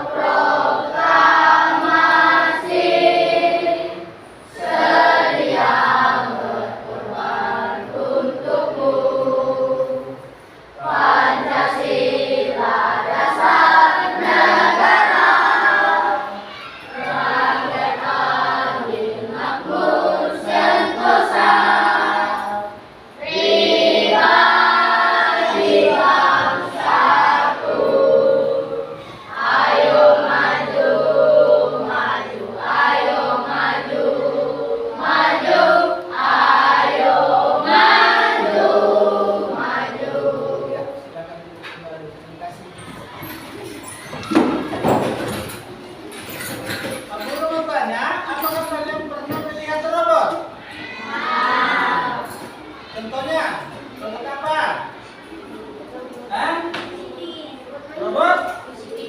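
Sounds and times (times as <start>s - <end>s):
children singing together: 0.0s - 41.2s, 50.6s - 52.8s.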